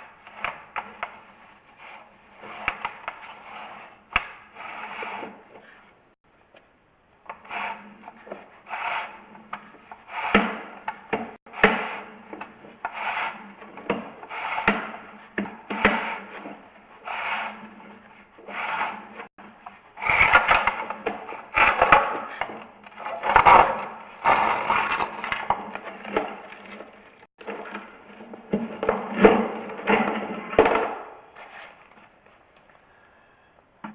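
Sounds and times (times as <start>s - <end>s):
camera cable scraping in pipe: 1.8s - 5.8s.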